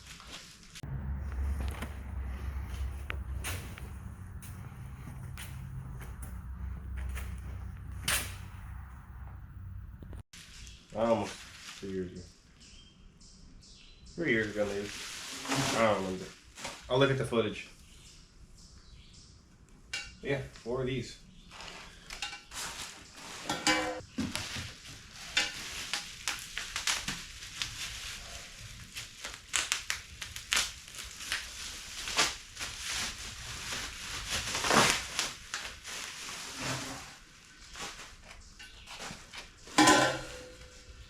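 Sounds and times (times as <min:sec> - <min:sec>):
metal pipes knocking and clanking: 0:23.5 - 0:24.0, 0:39.7 - 0:40.9
packing material crinkling: 0:24.3 - 0:38.4.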